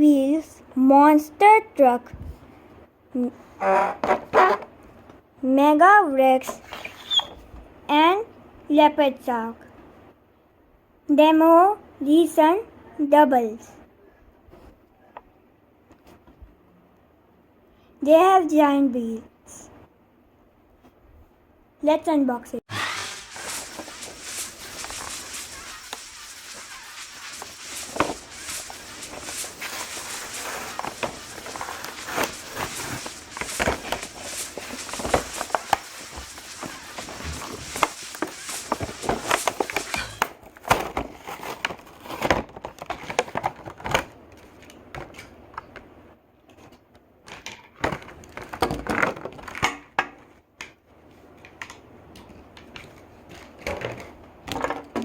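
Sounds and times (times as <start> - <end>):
plastic and cardboard crinkling: 22.7 - 40.3.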